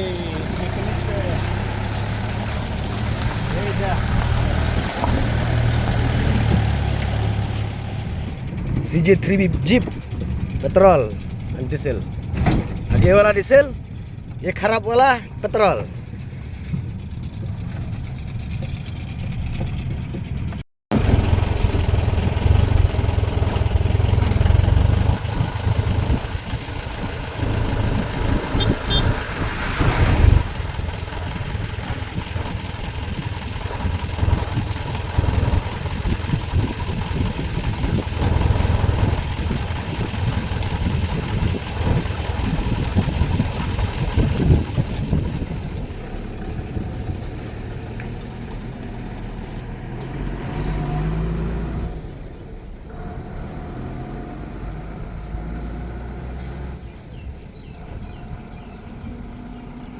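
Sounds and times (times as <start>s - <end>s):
car engine running: 0.0s - 14.4s, 16.0s - 48.9s.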